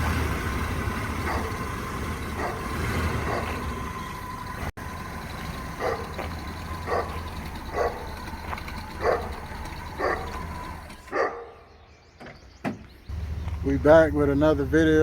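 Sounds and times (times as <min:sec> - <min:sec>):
engine idling: 0:00.0 - 0:11.3, 0:13.1 - 0:15.0
dog barking: 0:01.2 - 0:01.6, 0:02.4 - 0:03.6, 0:05.8 - 0:06.1, 0:06.8 - 0:08.1, 0:09.0 - 0:09.4, 0:10.0 - 0:10.4, 0:11.1 - 0:11.7.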